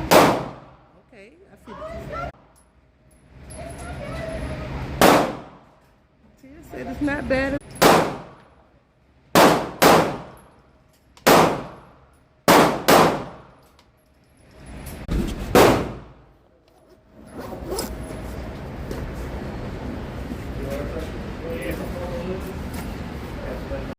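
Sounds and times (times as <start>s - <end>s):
distant gunshots: 0.0s - 0.8s, 5.0s - 5.6s, 7.8s - 8.4s, 9.4s - 10.4s, 11.2s - 11.8s, 12.5s - 13.5s, 15.6s - 16.2s
gunshots with echo: 0.0s - 0.8s, 5.0s - 5.6s, 7.8s - 8.4s, 9.4s - 10.4s, 11.2s - 11.9s, 12.5s - 13.5s, 15.5s - 16.2s.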